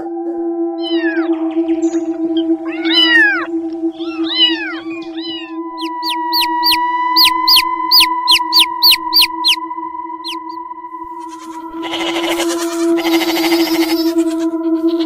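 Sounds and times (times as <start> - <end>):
background music tones: 0.0 - 15.0
cat meowing: 0.8 - 1.3, 2.6 - 9.6
cat chirping: 2.7 - 9.6, 10.2 - 10.6.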